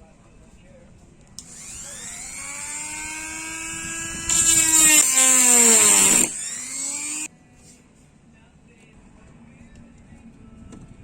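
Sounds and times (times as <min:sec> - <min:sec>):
electric motor whining: 0:01.4 - 0:07.3.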